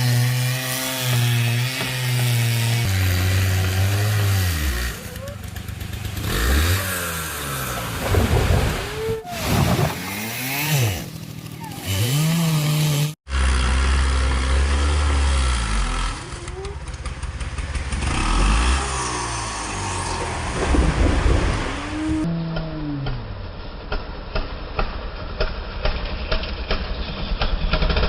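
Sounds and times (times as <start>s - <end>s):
chainsaw sawing a tree: 0.0s - 8.2s, 8.8s - 17.1s, 17.7s - 20.4s.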